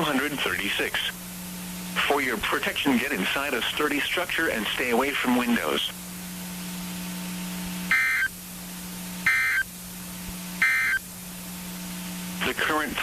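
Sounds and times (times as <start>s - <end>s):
steady low hum: 0.0s - 13.0s
short electronic beeps: 7.9s - 8.3s, 9.3s - 9.7s, 10.6s - 11.0s.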